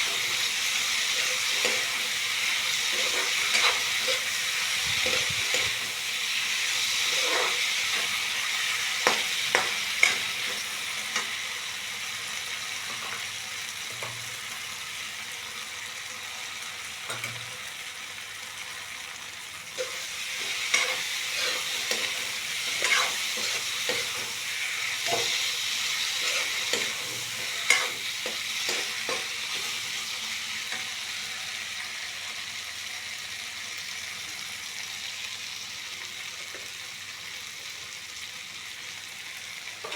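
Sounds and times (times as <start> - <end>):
spatula scraping a pan: 0.0 - 11.4, 19.8 - 31.1
food sizzling in hot oil: 0.0 - 39.9.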